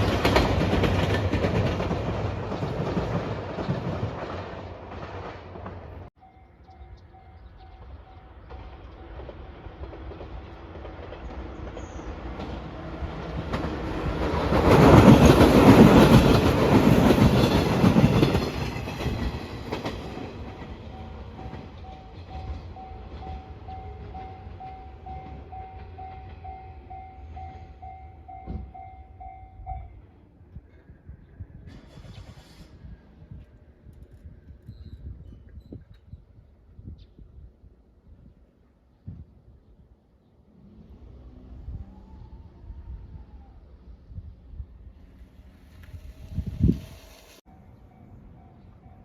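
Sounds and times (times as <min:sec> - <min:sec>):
train passing: 0:00.0 - 0:34.6, 0:37.7 - 0:49.0
crossing warning bell dinging: 0:06.2 - 0:09.4, 0:19.4 - 0:30.2, 0:47.5 - 0:49.0.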